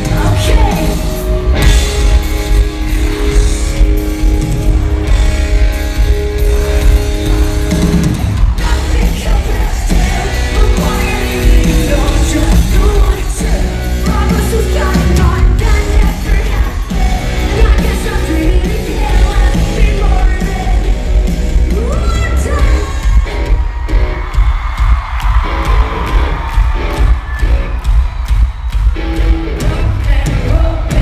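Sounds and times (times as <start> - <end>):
woman singing: 0.0 - 1.3, 8.6 - 23.1, 29.6 - 31.0
live rock band: 0.0 - 31.0.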